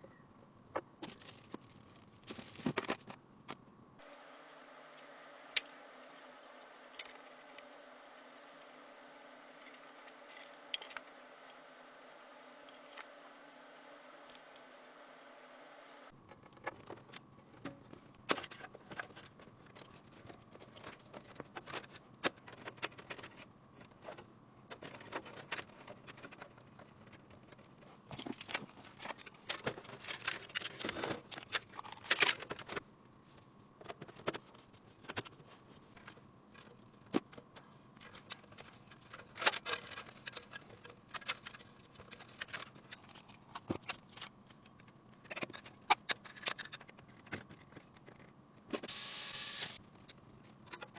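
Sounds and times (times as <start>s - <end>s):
computer parts clicking and rustling: 16.2s - 32.8s, 33.8s - 50.9s.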